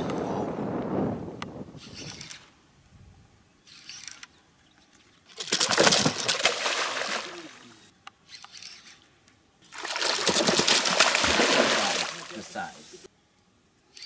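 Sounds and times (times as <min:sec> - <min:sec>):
fish thrashing: 0:05.3 - 0:07.4, 0:09.7 - 0:12.3.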